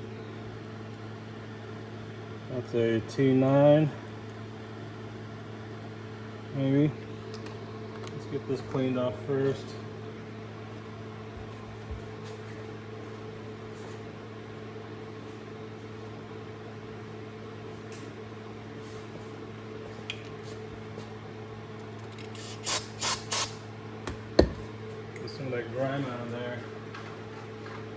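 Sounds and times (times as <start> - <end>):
steady low hum: 0.0 - 27.9
spray bottle hisses: 22.3 - 23.6.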